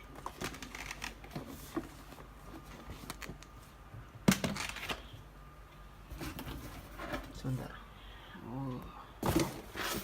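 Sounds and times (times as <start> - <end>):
cardboard boxes scraping and rustling: 9.2 - 10.0.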